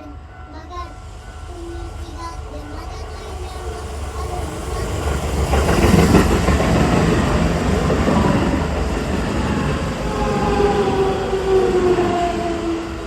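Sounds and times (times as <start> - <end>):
electric train passing: 0.0 - 13.0.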